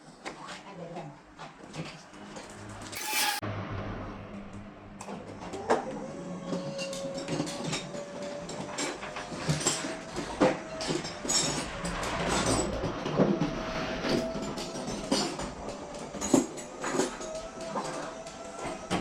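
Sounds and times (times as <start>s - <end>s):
metal scraping and rattling: 3.0s - 3.4s.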